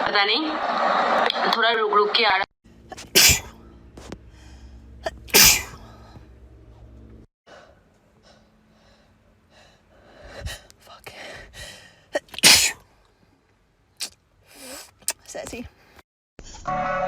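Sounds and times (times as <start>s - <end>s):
woman sneezing: 2.9s - 3.6s, 5.0s - 5.8s, 12.2s - 12.8s
gasping breaths: 7.5s - 12.4s, 14.0s - 15.0s.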